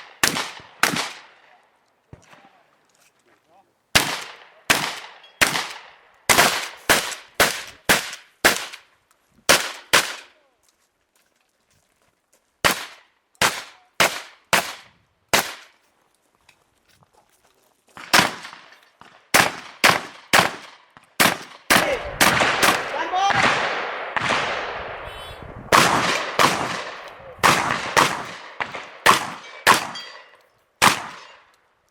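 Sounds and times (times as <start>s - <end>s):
shotgun shots: 0.0s - 1.6s, 4.0s - 8.8s, 9.5s - 10.4s, 12.6s - 15.7s, 18.0s - 25.1s, 25.7s - 31.5s.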